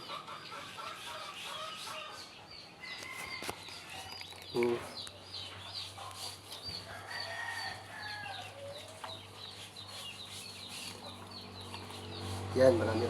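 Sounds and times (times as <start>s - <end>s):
chickens chirping and clucking: 0.0s - 13.0s.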